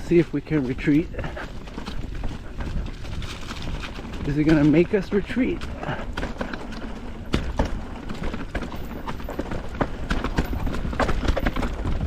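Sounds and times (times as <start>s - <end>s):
bike knocking and rattling on rocks: 0.0s - 12.0s.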